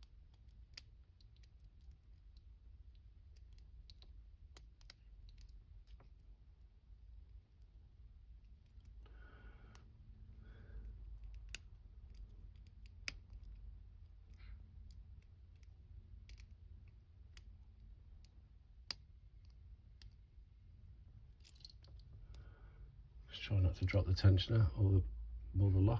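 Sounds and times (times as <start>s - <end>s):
metallic clicks of lock picking: 0.0s - 2.5s, 3.2s - 6.2s, 11.1s - 17.5s, 21.3s - 22.4s
low steady hum: 0.0s - 25.9s.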